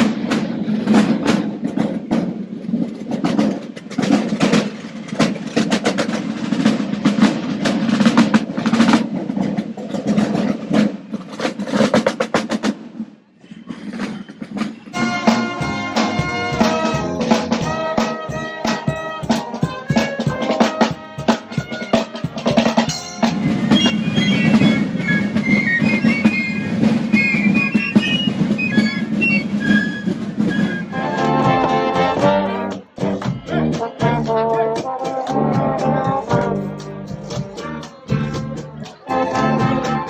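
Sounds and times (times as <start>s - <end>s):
snare drums playing a march: 0.0s - 12.9s, 14.9s - 40.0s
music with held pitched notes: 15.0s - 25.0s, 31.0s - 40.0s.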